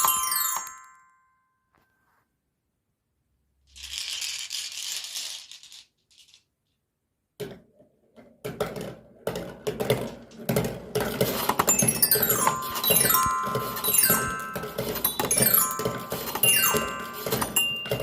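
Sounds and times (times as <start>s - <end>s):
marbles clicking on wooden track: 3.7s - 6.8s, 8.4s - 18.0s
marbles rolling hiss: 3.8s - 6.4s.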